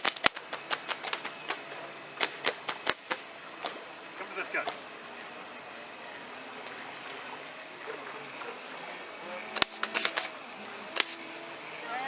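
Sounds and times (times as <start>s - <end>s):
model cannons firing: 0.0s - 4.9s, 9.5s - 11.5s
steady outdoor hiss: 0.0s - 12.0s.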